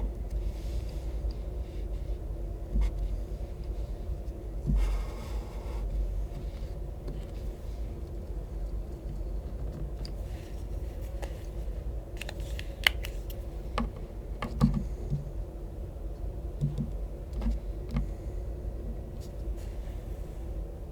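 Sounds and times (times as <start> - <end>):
steady low hum: 0.0 - 20.9
small clicks and taps: 12.2 - 15.2, 16.6 - 18.1.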